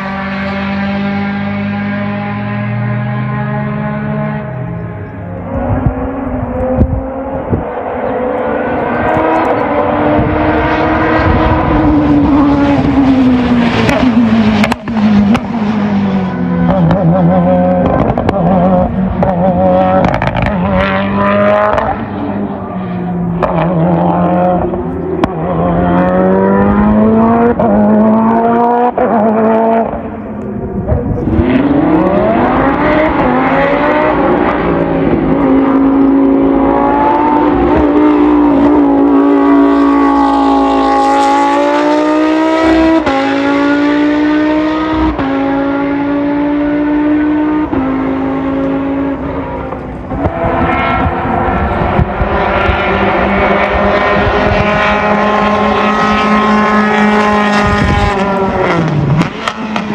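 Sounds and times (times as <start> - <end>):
race car engine accelerating: 0.0 - 59.9.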